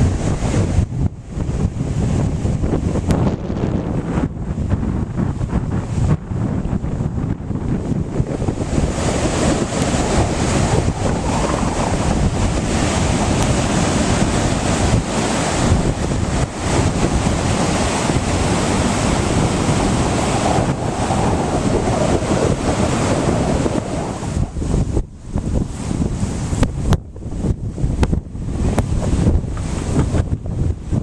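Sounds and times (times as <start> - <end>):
wind buffeting microphone: 0.0 - 31.0
ocean waves and surf: 7.7 - 31.0.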